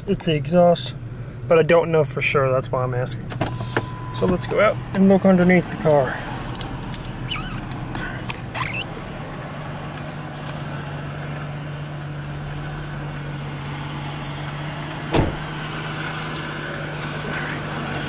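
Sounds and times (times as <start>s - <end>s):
car engine idling: 0.0s - 18.0s
loud thump: 15.1s - 15.5s.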